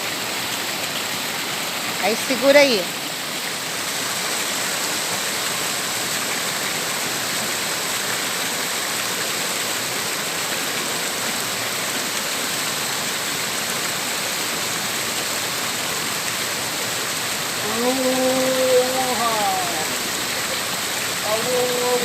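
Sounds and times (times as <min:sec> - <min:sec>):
waterfall rushing over rocks: 0:00.0 - 0:22.0.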